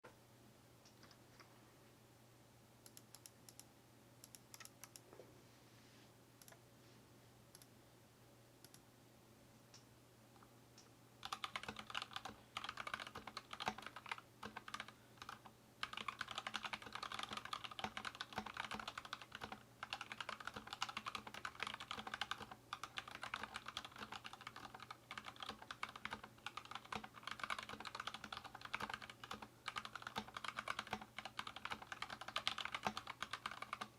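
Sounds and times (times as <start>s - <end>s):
typing on mechanical keyboard: 11.2s - 33.9s.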